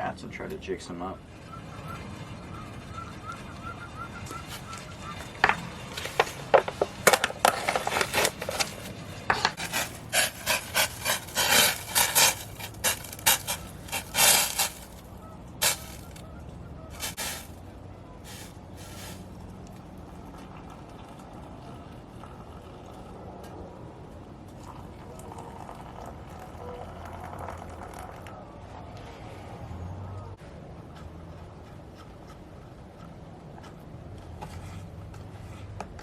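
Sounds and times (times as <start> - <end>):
camping gear rustling and clattering: 5.3 - 16.2, 16.9 - 17.6.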